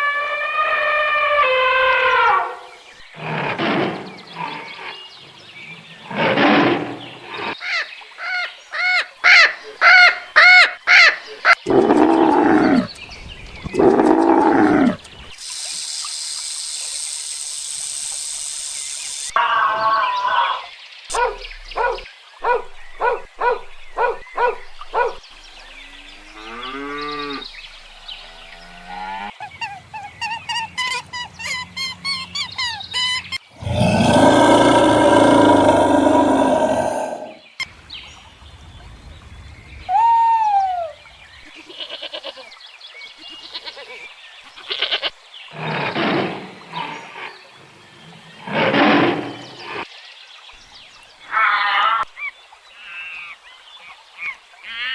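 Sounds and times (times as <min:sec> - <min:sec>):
farm animal calls: 0:00.0 - 0:03.1, 0:13.7 - 0:34.7, 0:41.4 - 0:42.5, 0:43.1 - 0:45.2.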